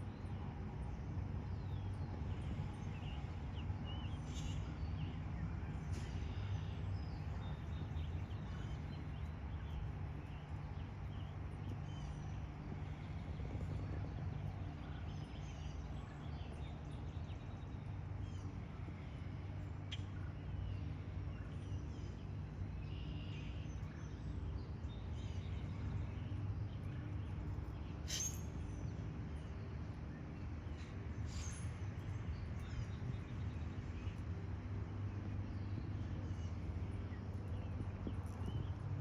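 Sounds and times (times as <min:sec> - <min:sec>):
steady low rumble: 0:00.0 - 0:39.0
bird chirps: 0:28.0 - 0:28.8.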